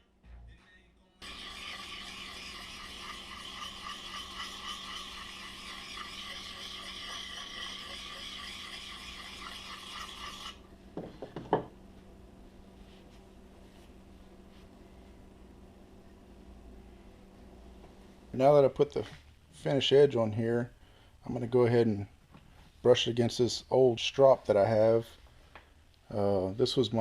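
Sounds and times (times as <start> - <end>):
hatchet scraping on sharpening stone: 1.2 - 10.6.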